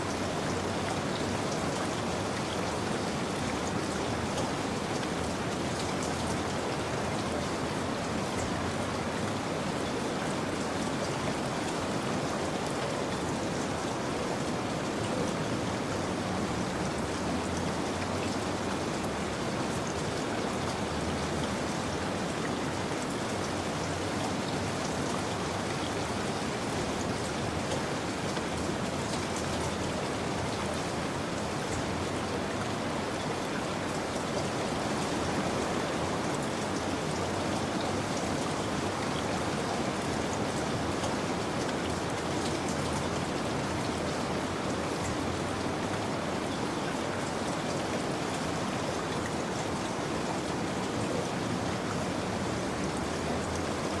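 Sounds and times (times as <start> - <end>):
rain pattering on surfaces: 0.0 - 54.0.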